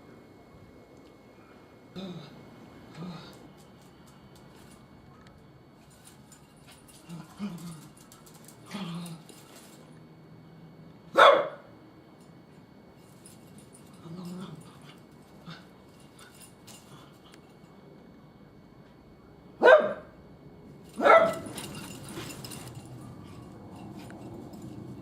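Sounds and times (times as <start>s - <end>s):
dog barking: 11.2s - 11.7s, 19.6s - 20.2s, 21.0s - 21.6s.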